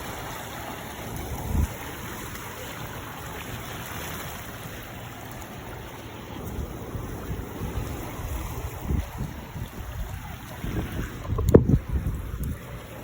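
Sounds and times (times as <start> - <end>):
water rushing hiss: 0.0 - 13.0
wind rumble on microphone: 0.0 - 13.0.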